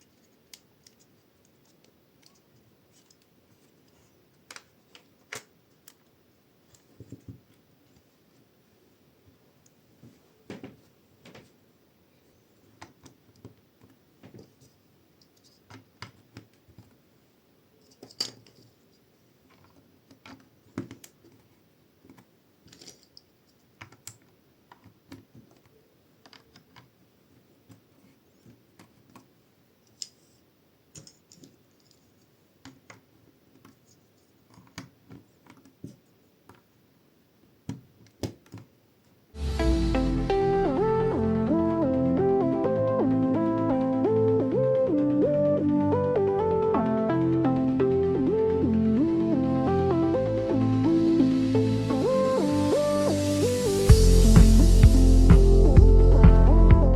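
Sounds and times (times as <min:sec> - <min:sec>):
plastic bricks clicking together: 0:22.1 - 0:26.9.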